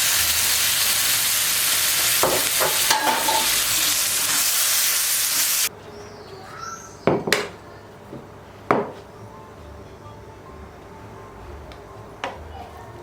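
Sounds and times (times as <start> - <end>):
food sizzling in a frying pan: 0.0 - 5.7
utensils or dishes clinking: 2.0 - 4.5.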